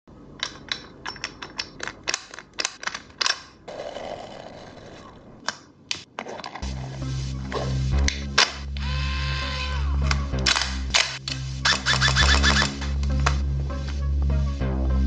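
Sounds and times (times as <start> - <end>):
music: 6.6 - 15.0
gel blaster clicks: 10.1 - 12.8.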